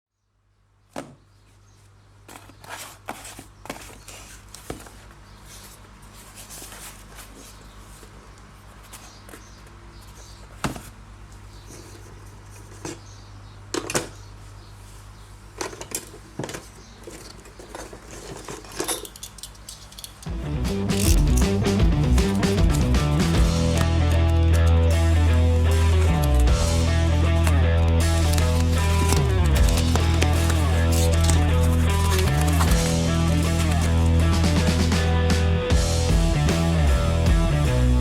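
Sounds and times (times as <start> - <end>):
cardboard and plastic rustling: 2.2 - 11.0, 14.9 - 19.3, 20.8 - 35.0
low hum: 20.3 - 37.8
packaging clicks and taps: 20.9 - 34.8.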